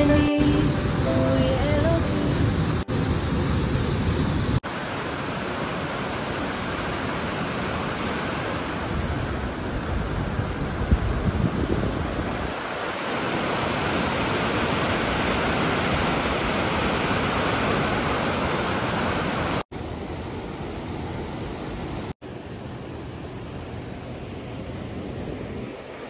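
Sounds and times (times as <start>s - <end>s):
waterfall rushing: 0.0s - 11.2s, 11.8s - 19.6s.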